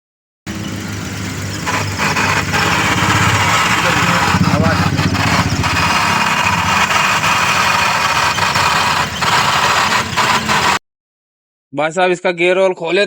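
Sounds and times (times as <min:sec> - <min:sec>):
car engine idling: 0:00.5 - 0:10.8
gearbox grinding noise: 0:01.1 - 0:10.8.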